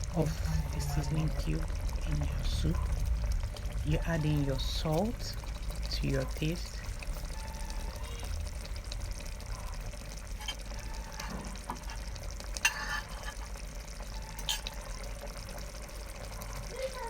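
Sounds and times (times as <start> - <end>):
spoon scraping through thick soup: 10.3 - 13.6.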